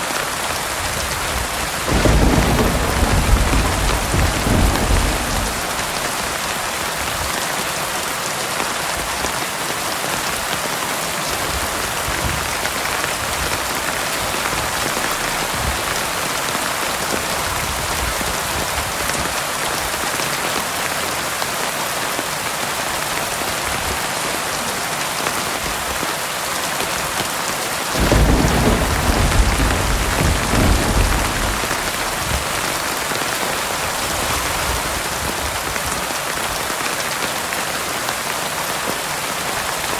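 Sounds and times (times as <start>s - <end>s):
heavy rain falling: 0.0s - 39.9s
thunder rumbling: 1.0s - 7.3s, 12.0s - 18.3s, 27.9s - 35.6s.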